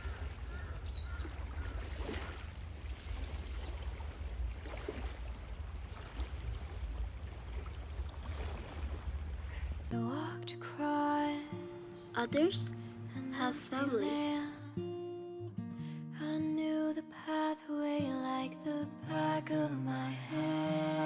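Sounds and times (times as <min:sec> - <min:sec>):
wind: 0:00.0 - 0:10.0
water: 0:00.0 - 0:15.3, 0:16.1 - 0:21.0.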